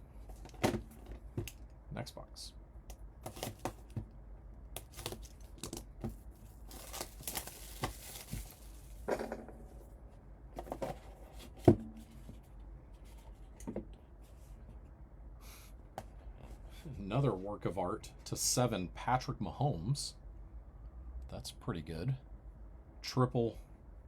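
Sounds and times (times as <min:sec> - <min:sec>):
cardboard clicks and rustles: 0:03.2 - 0:09.8
wrapping tearing and crinkling: 0:04.8 - 0:09.1.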